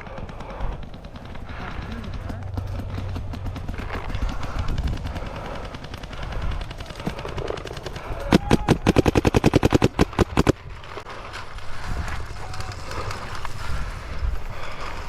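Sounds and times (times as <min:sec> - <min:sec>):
paintball marker firing rapidly: 0:00.0 - 0:10.6
wind rumble on microphone: 0:00.0 - 0:15.0.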